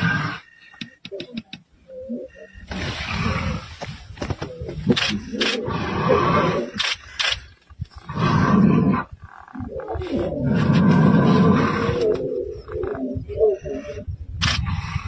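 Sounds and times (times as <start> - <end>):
lion roaring: 4.6 - 6.8, 7.9 - 14.1
lion grunting: 7.9 - 15.0.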